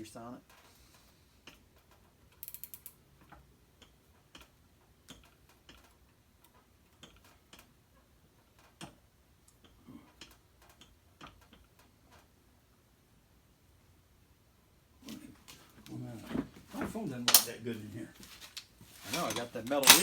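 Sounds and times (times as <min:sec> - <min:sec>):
hand tools clicking on metal: 0:17.3 - 0:17.6, 0:18.5 - 0:20.0.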